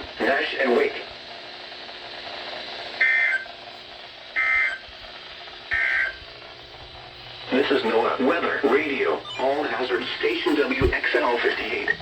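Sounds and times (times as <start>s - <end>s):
steady radio hiss: 0.0s - 12.0s
warbling two-tone data bursts: 9.2s - 12.0s.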